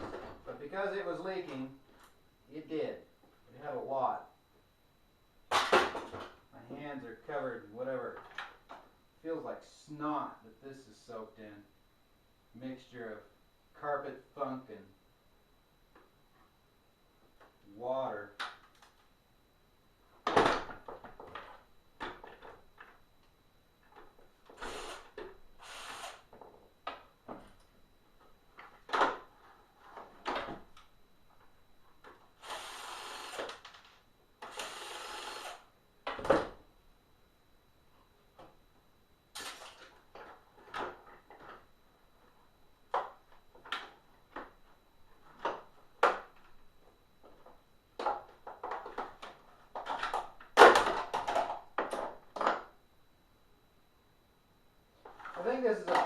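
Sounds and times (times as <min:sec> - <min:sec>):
plastic parts clicking and clattering: 0:47.3 - 0:52.7, 0:55.1 - 0:56.0.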